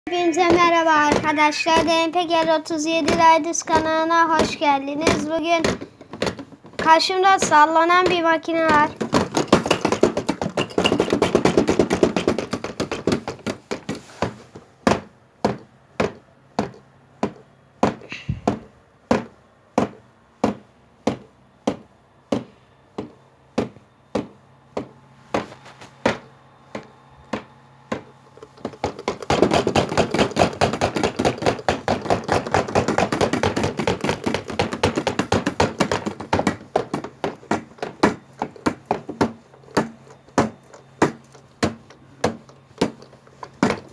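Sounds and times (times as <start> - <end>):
washing machine knocking: 0.1 - 43.9.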